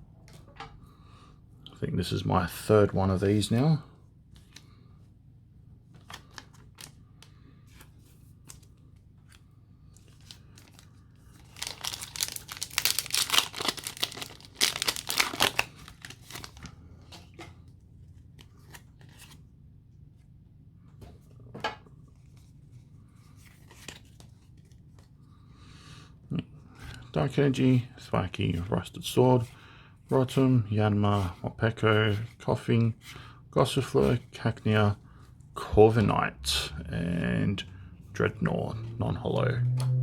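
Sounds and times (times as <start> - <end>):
cards rustling: 5.9 - 19.4
foil wrapper tearing and crinkling: 11.4 - 16.6.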